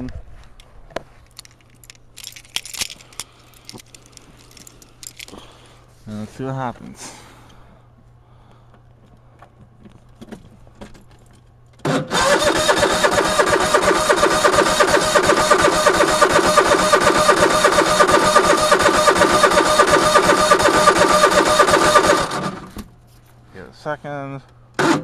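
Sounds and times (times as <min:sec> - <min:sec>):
engine cranking on starter: 0:11.8 - 0:22.8, 0:24.8 - 0:25.0.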